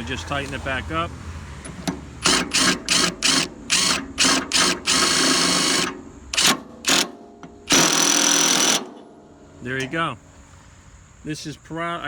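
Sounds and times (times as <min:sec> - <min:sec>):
impact wrench hammering: 0:01.7 - 0:09.1.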